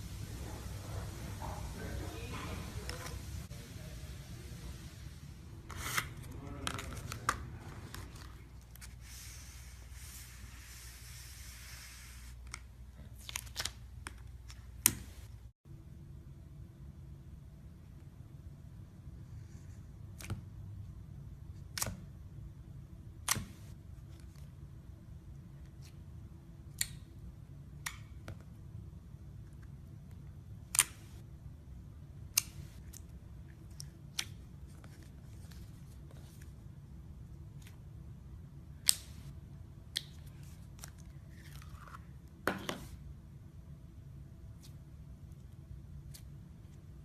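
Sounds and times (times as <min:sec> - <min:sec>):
low hum: 0:00.0 - 0:08.8.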